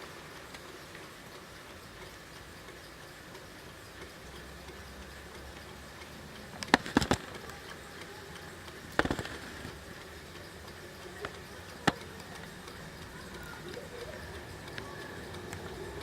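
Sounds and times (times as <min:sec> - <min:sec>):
faint steady background noise: 0:00.0 - 0:16.0
sharp clicks and knocks: 0:06.0 - 0:07.9, 0:08.9 - 0:15.7.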